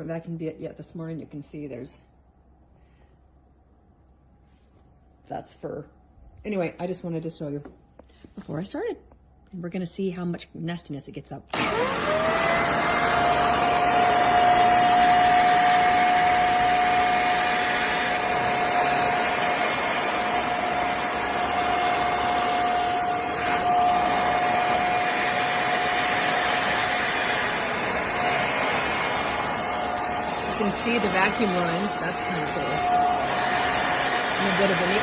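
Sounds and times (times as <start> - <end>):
vacuum cleaner motor whine: 11.5 - 35.0
suction air rushing: 12.6 - 35.0.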